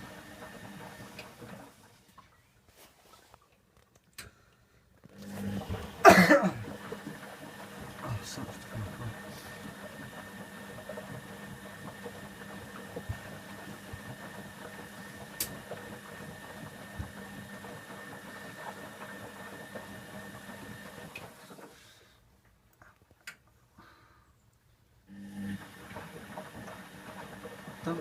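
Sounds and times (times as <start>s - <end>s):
washing machine motor hum: 0.0s - 2.4s, 5.0s - 22.0s, 25.1s - 28.0s.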